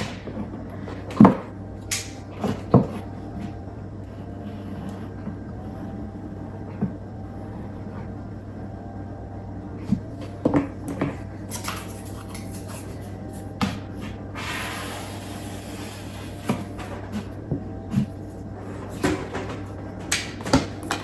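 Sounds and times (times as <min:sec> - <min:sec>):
paper rustling and scraping: 0:11.0 - 0:21.0.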